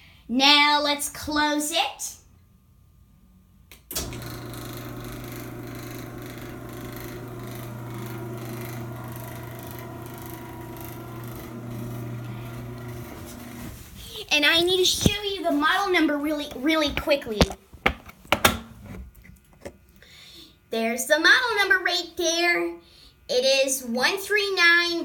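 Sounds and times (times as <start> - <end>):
garage door opener click: 3.8 - 13.0
garage door opener motor humming: 3.9 - 14.0.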